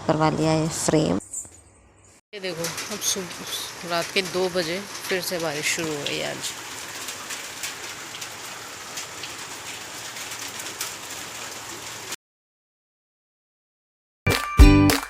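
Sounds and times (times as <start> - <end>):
dripping: 2.4 - 12.2
rain falling: 2.4 - 12.2.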